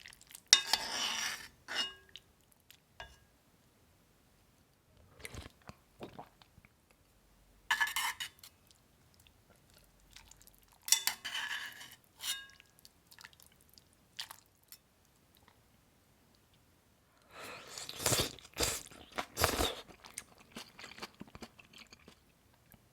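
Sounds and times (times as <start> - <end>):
person chewing with mouth clicks: 17.6 - 22.8.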